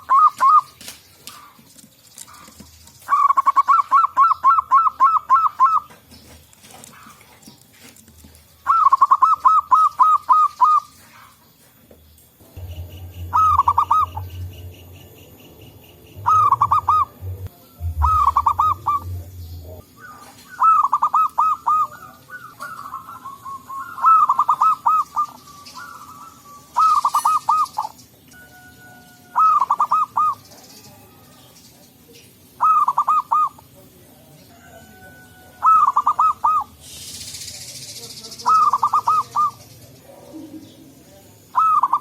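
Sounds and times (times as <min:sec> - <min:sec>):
doves cooing: 0:00.0 - 0:31.5, 0:32.5 - 0:33.8, 0:34.6 - 0:37.0, 0:38.4 - 0:42.0
low rumble: 0:12.4 - 0:20.0.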